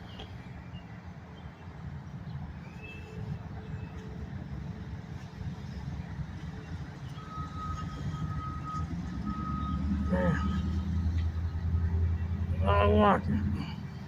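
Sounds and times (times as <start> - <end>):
road traffic rumbling: 0.0 - 14.0
back-up alarm beeping: 7.2 - 10.8.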